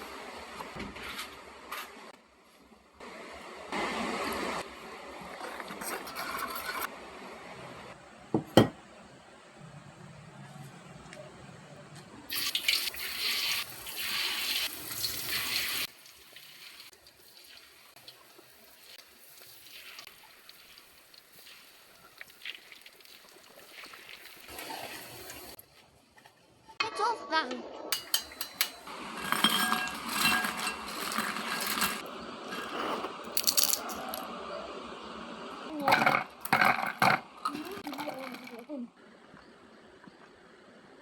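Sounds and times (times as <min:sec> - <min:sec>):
water running from a tap: 0:12.3 - 0:25.6
utensils clinking on cookware: 0:27.9 - 0:34.2.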